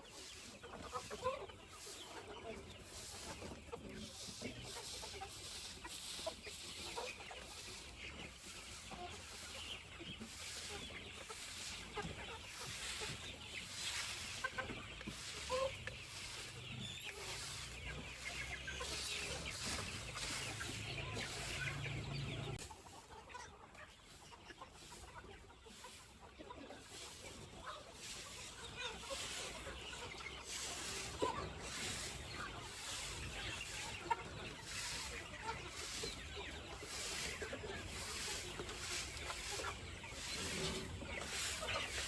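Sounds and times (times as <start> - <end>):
chickens clucking: 0.0 - 42.0.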